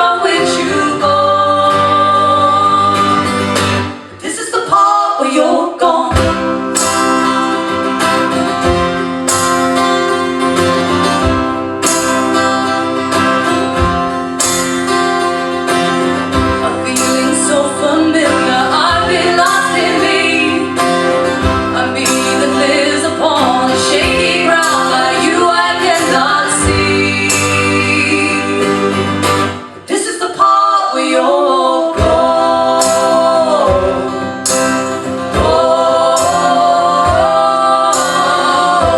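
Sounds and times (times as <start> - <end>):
women singing: 0.0 - 6.7, 16.3 - 38.9
strummed acoustic guitar: 0.0 - 38.9.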